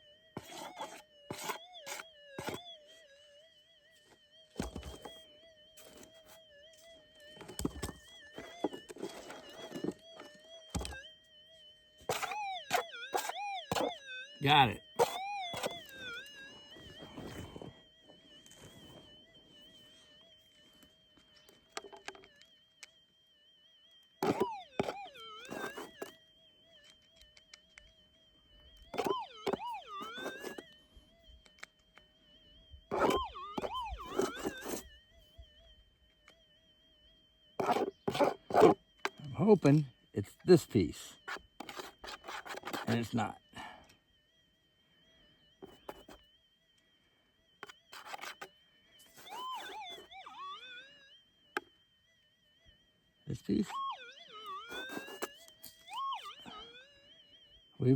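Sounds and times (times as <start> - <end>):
metal detector target signals: 0.4 - 2.7, 7.4 - 11.0, 12.0 - 16.2, 24.2 - 26.2, 28.7 - 30.7, 32.9 - 34.9, 37.6 - 43.7, 45.6 - 46.2, 47.6 - 50.8, 53.3 - 56.8
metal detector threshold hum: 4.0 - 43.8.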